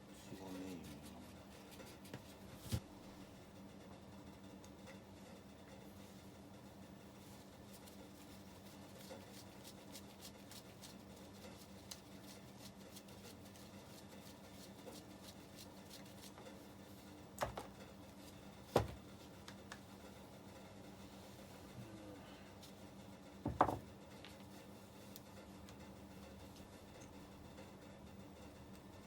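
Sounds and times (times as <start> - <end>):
sharp knocks of hard parts: 18.7 - 19.0, 23.4 - 23.9.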